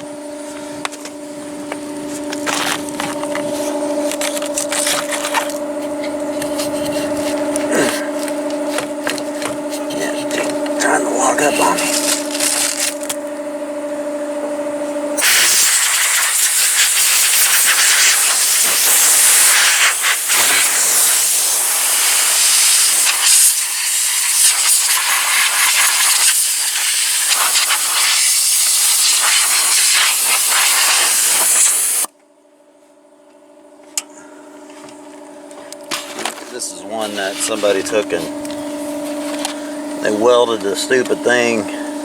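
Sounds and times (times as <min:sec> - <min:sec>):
low hum: 0:00.0 - 0:15.2
loud steady hiss: 0:15.2 - 0:32.1.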